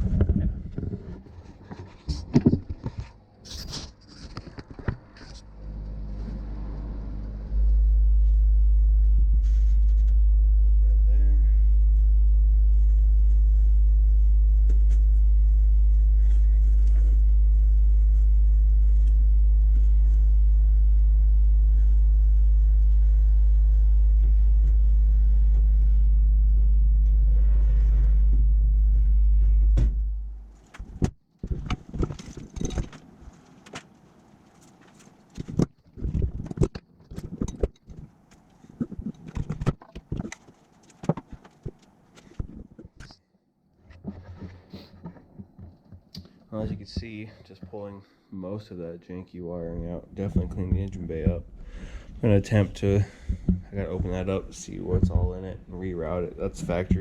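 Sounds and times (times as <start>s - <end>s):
loud steady low hum: 5.2s - 31.2s, 49.8s - 57.0s
handling knocks and clicks: 30.6s - 43.1s, 43.8s - 47.8s.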